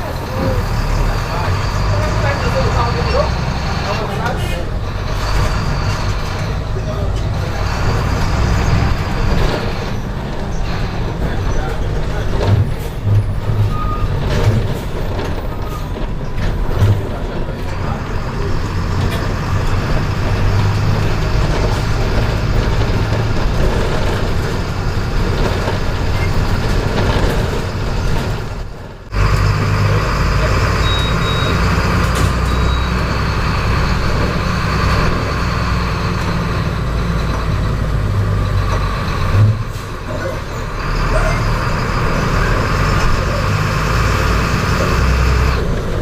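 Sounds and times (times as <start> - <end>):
bus diesel engine running: 0.0 - 46.0.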